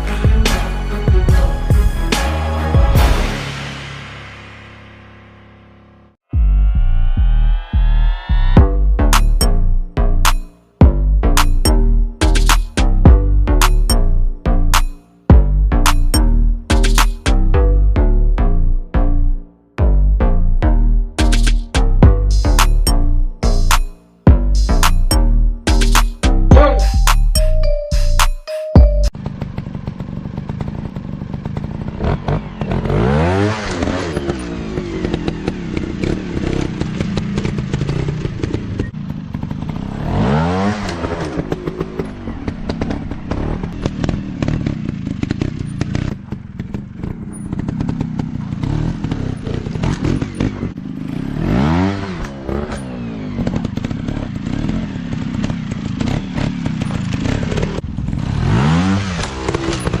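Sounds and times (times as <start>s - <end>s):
dirt bike engine revving: 29.2s - 60.0s.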